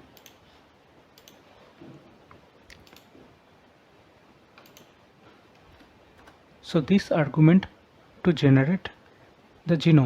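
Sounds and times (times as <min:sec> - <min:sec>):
faint keyboard typing: 0:00.1 - 0:01.5, 0:02.3 - 0:03.3, 0:04.5 - 0:06.4.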